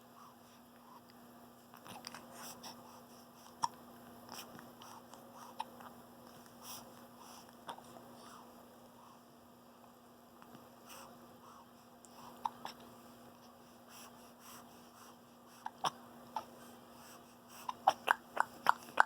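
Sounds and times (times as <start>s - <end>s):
baby mouth noises: 1.8s - 2.3s, 17.7s - 19.0s
baby hiccupping: 17.7s - 19.0s.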